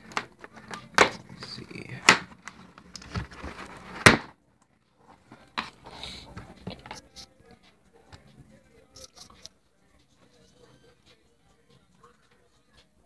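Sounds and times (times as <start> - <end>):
cardboard packaging rustling: 0.0 - 4.4.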